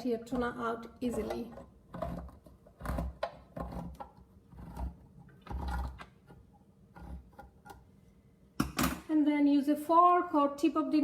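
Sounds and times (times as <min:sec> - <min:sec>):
can opener cutting tin lid: 0:00.3 - 0:07.8.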